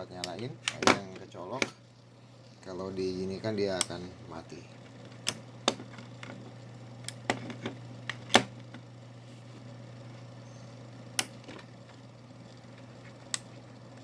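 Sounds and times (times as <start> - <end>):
steady low hum: 0.0 - 14.0
plastic switch clicks: 5.2 - 5.8, 11.2 - 11.4.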